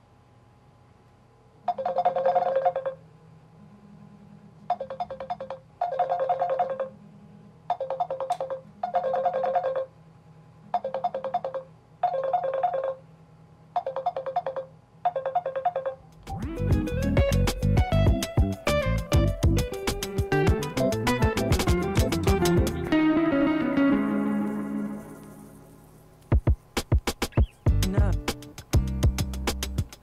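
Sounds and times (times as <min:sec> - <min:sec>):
chiming phone ringtone: 0:01.7 - 0:03.0, 0:04.7 - 0:06.9.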